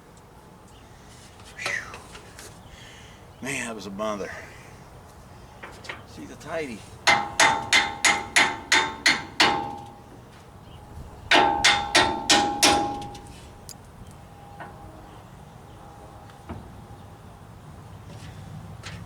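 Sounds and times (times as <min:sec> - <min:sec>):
hammer clanging on steel: 0:07.0 - 0:10.2, 0:11.3 - 0:13.7.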